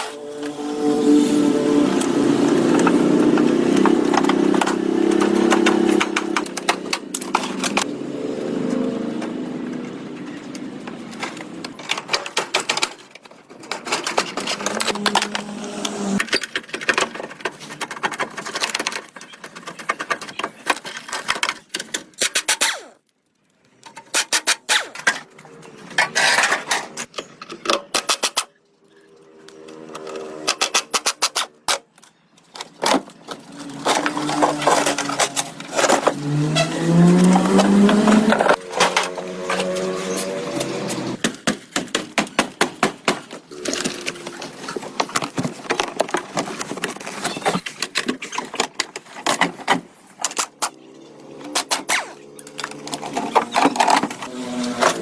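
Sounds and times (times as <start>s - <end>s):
sharp clicks and knocks: 2.0s - 7.9s.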